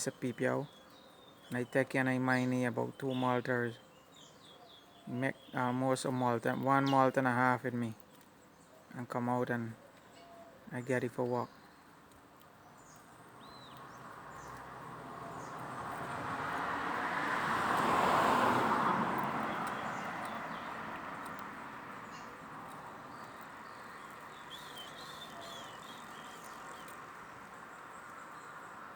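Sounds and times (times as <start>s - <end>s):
faint small-bird chirps: 9.8s - 11.9s, 23.1s - 27.0s
vehicle passing by: 13.2s - 28.9s.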